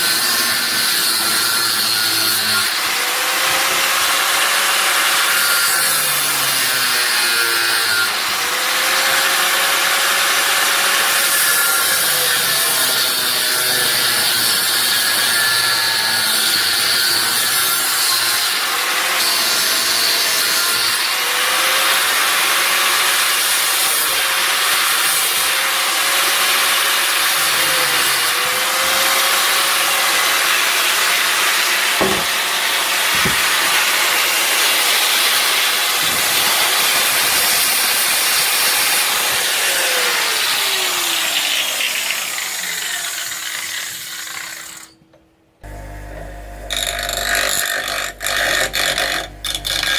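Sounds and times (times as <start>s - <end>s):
power tool grinding steel: 0.0s - 45.0s, 45.6s - 49.9s
short knocks: 32.0s - 32.4s.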